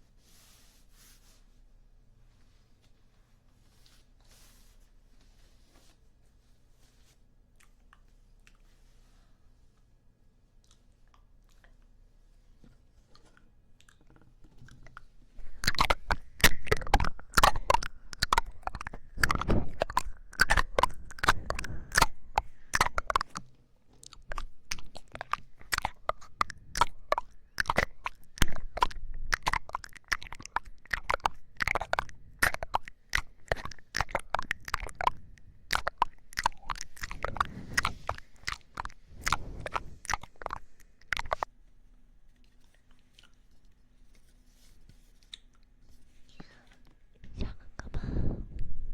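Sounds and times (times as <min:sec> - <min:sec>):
wet mouth clicks and crackles: 0:13.2 - 0:41.5, 0:45.2 - 0:45.7.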